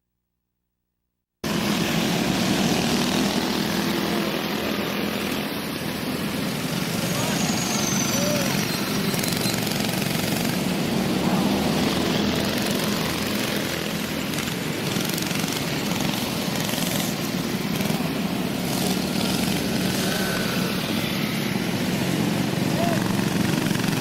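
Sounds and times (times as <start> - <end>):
go-kart engines running: 1.4 - 24.0.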